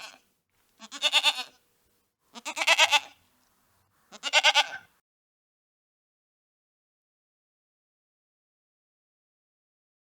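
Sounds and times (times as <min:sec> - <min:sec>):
goats bleating: 0:00.0 - 0:00.2, 0:00.8 - 0:01.6, 0:02.3 - 0:03.2, 0:04.1 - 0:04.9.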